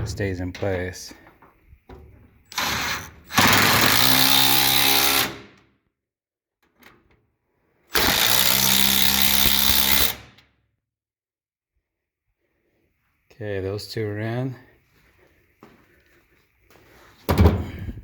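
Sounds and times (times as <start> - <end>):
impact wrench running: 2.5 - 5.6, 8.0 - 10.2.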